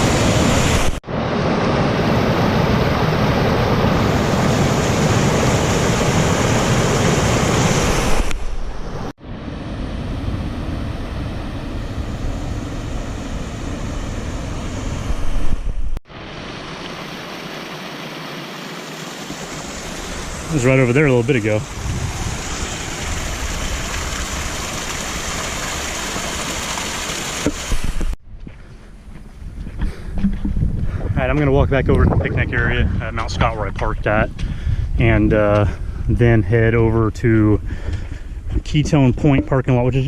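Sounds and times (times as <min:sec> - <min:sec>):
creek water rushing over rocks: 0:16.1 - 0:28.2.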